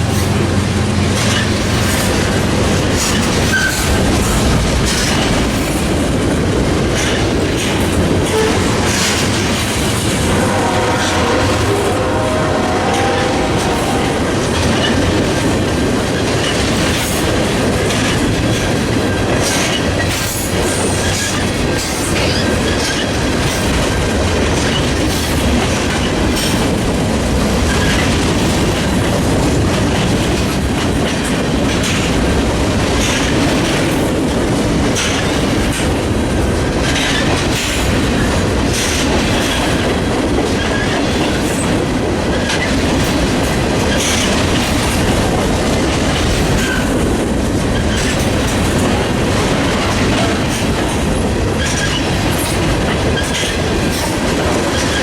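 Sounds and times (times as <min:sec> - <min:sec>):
freight train wheels clattering: 0:00.0 - 0:55.0
train wheel squeals: 0:03.0 - 0:04.0.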